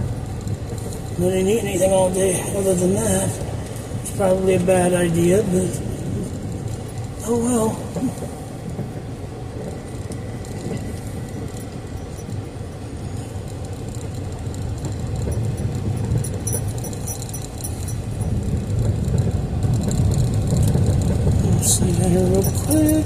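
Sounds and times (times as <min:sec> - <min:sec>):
car engine and road noise: 0:00.0 - 0:23.0
faint high-pitched rattling: 0:13.4 - 0:23.0.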